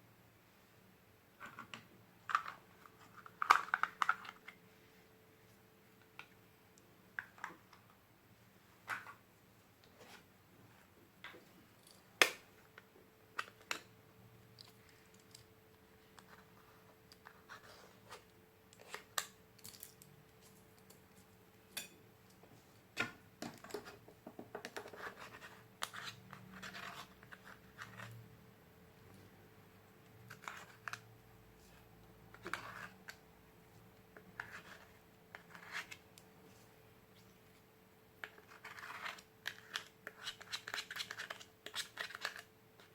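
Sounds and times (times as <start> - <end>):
faint steady hum: 0.0 - 42.9
crackly scraping of slime: 24.8 - 28.3, 30.2 - 31.1, 32.3 - 33.2, 34.2 - 36.0, 38.2 - 42.9.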